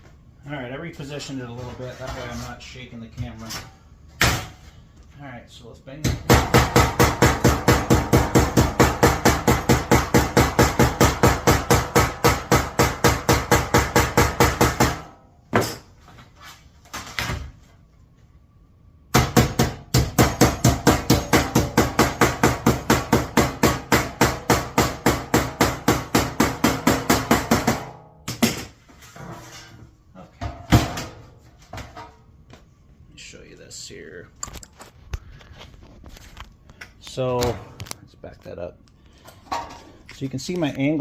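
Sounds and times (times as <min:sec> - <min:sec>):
hammer striking sheet metal: 0:06.2 - 0:15.9, 0:19.2 - 0:28.7.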